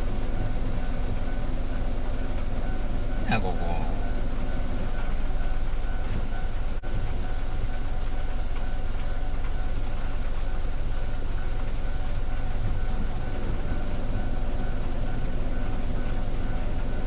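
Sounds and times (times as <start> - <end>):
train rumbling past: 0.0 - 17.0.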